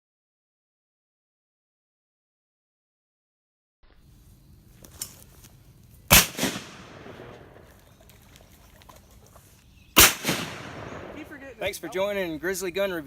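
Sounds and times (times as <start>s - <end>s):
shotgun shot echoing: 6.1s - 7.8s, 10.0s - 11.5s.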